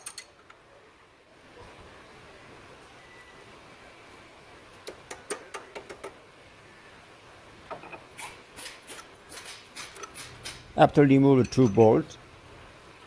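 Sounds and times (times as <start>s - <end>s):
metal tools clicking and tapping: 0.0s - 0.6s, 8.6s - 12.6s.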